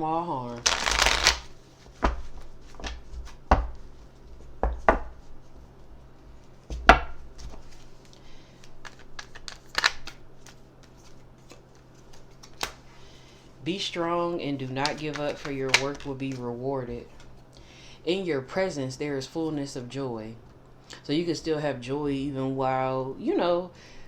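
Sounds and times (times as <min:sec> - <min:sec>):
faint steady hum: 0:00.0 - 0:24.0
cards being shuffled: 0:00.5 - 0:03.8, 0:07.3 - 0:12.9, 0:14.6 - 0:17.4.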